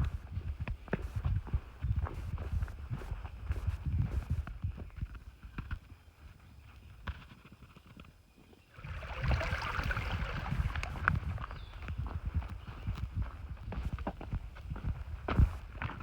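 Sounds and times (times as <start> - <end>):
footsteps on a trail: 0.0 - 8.6, 9.5 - 16.0.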